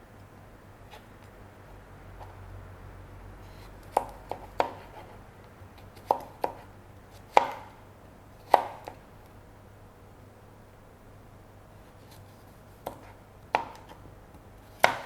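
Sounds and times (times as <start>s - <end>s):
knife chopping on cutting board: 3.8s - 5.2s, 5.8s - 7.8s, 8.4s - 9.0s, 12.8s - 14.0s, 14.7s - 15.0s.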